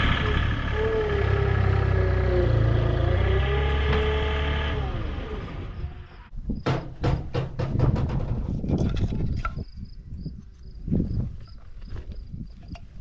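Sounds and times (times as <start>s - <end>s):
vehicle engine whining: 0.0s - 6.3s
sharp knocks: 6.6s - 8.5s.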